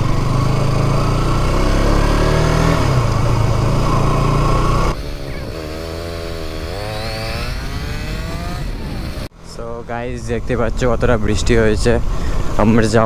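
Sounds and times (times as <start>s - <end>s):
motorcycle engine running: 0.0s - 9.8s.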